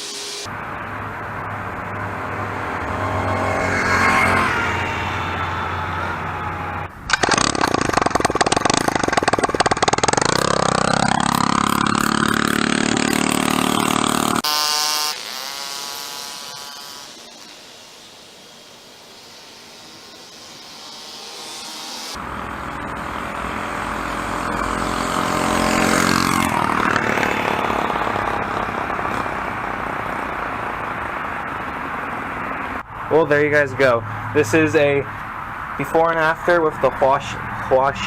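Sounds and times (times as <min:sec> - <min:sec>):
small engine revving: 0:02.2 - 0:31.0
open exhaust rattle: 0:04.9 - 0:14.4, 0:22.2 - 0:32.8.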